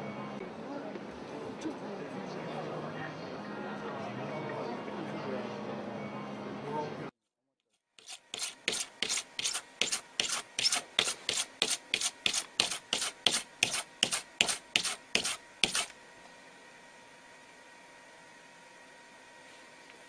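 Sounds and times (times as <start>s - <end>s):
rubbing strokes on a surface: 8.0s - 15.9s.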